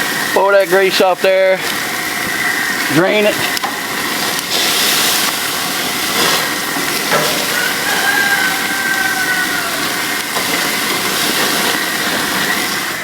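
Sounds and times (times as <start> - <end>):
meat sizzling on a grill: 0.0 - 13.0
rooster crowing: 7.2 - 10.8.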